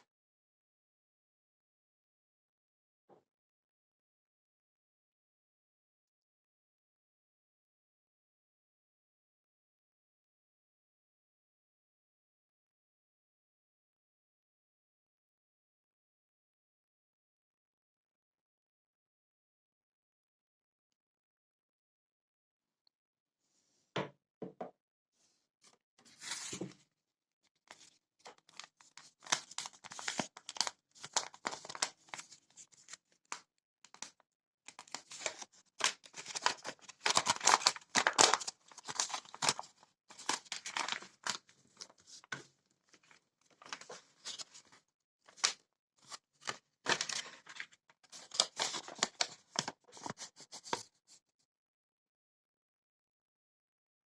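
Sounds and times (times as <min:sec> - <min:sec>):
packaging crinkling and rustling: 0:27.7 - 0:32.9, 0:34.7 - 0:42.5, 0:43.6 - 0:44.7, 0:46.4 - 0:50.8.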